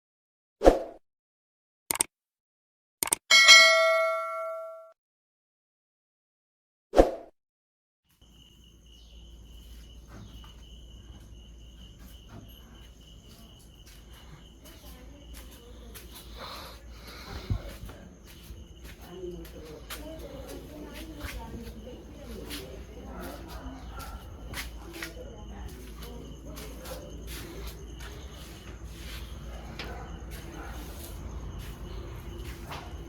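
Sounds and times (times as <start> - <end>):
small clicks: 3.0 - 3.2
insects chirping: 8.1 - 33.0
outdoor background noise: 8.1 - 33.0.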